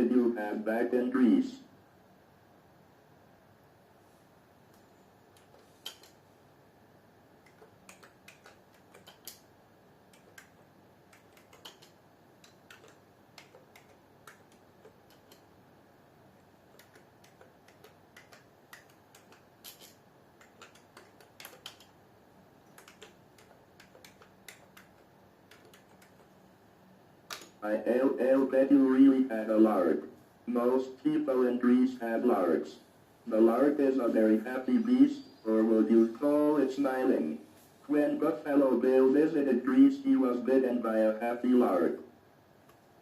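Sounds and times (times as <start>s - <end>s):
keyboard keystrokes: 7.4s - 9.4s, 10.1s - 15.4s, 16.7s - 22.0s, 22.7s - 26.3s.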